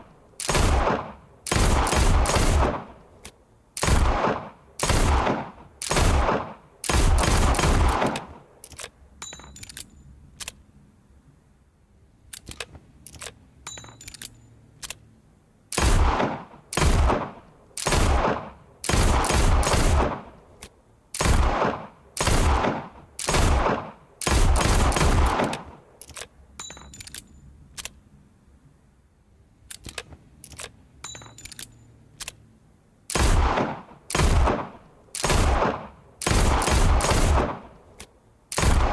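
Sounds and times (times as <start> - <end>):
revolver gunshots echoing: 0.4 - 3.0, 3.8 - 8.4, 15.8 - 20.4, 21.2 - 25.8, 33.1 - 37.8, 38.5 - 38.9.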